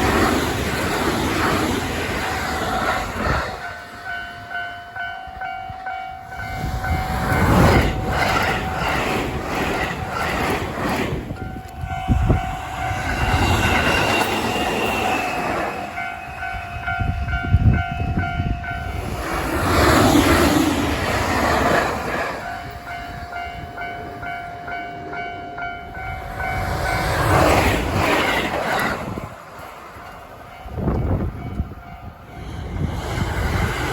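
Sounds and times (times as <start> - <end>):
train rushing past: 0.0 - 33.9
level crossing warning bell ringing: 3.6 - 7.7, 11.4 - 19.1, 22.4 - 27.2.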